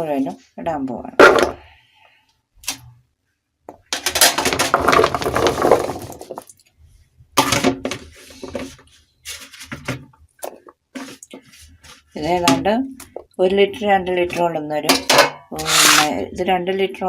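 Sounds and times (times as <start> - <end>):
potato pieces clattering into bowl: 4.0 - 6.6.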